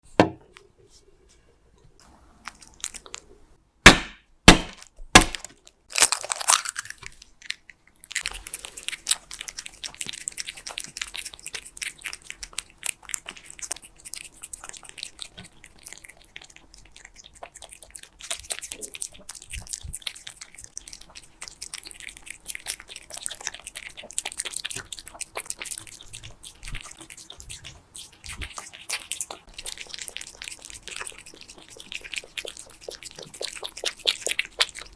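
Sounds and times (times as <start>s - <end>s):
cat chewing crunchily: 2.4s - 3.4s, 5.5s - 34.9s.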